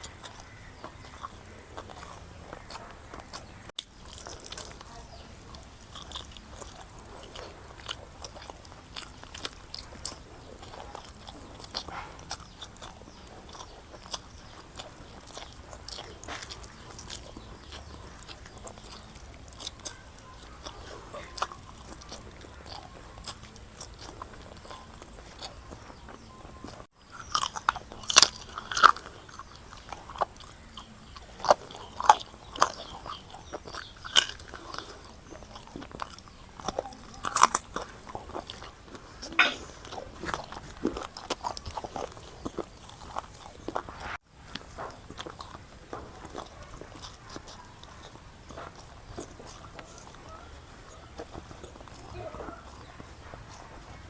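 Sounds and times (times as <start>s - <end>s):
wet mouth clicks: 0.0s - 53.9s
close chewing and crunching: 0.0s - 54.0s.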